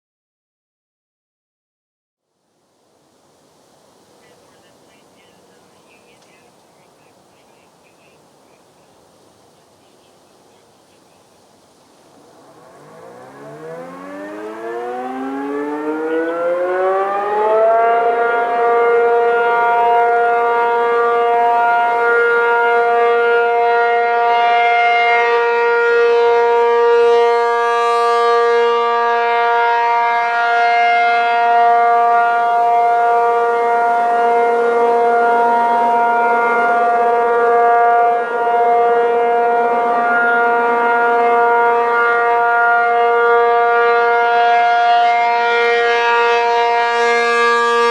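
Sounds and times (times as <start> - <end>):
civil defense siren winding up: 12.1 - 47.9.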